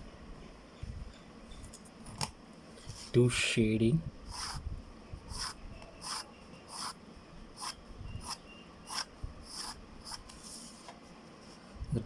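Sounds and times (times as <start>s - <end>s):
pencil scratching on paper: 4.3s - 4.6s, 5.3s - 7.0s, 7.6s - 10.6s.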